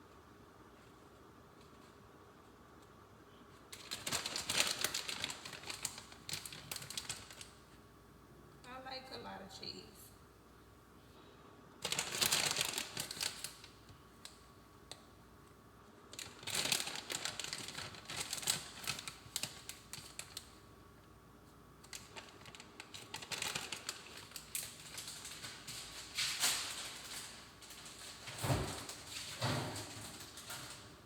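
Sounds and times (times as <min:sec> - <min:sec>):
crinkly packaging rustling: 0:03.6 - 0:07.7, 0:11.8 - 0:15.1, 0:16.1 - 0:20.6, 0:21.5 - 0:31.0.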